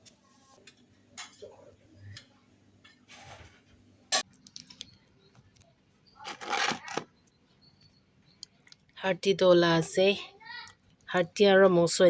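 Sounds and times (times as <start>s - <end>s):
rustling scrape: 6.2s - 7.0s.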